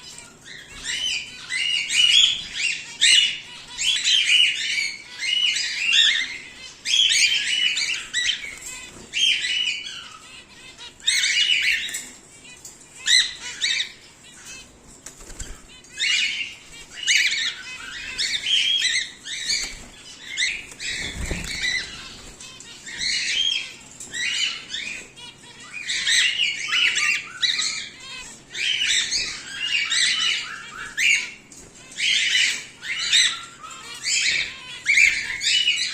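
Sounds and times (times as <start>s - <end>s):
cockatiels chirping harshly: 0.0s - 35.9s
wings flapping: 15.0s - 15.8s, 19.5s - 23.1s.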